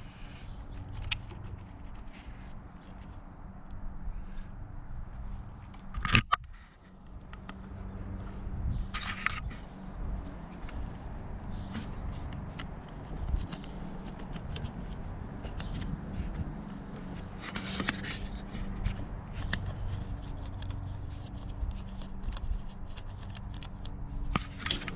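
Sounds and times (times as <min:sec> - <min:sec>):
steady low hum: 0:00.0 - 0:24.9
scraping rustle: 0:17.0 - 0:24.9.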